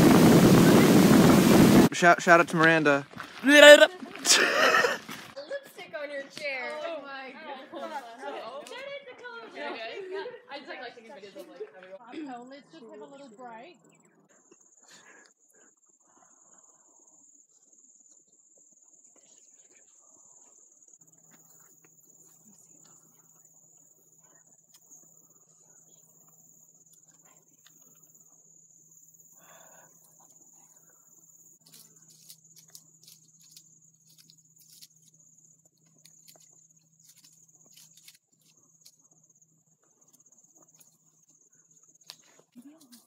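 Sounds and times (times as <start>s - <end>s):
high-pitched insect chirring: 31.0s - 43.0s.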